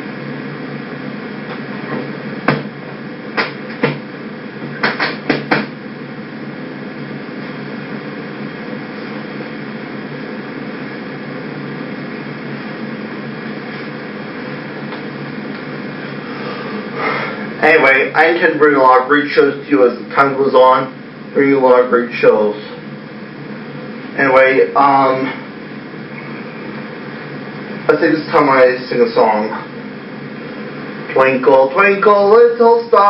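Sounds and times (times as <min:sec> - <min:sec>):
background hum and hiss: 0:00.0 - 0:33.0
short sharp knocks: 0:04.8 - 0:05.8.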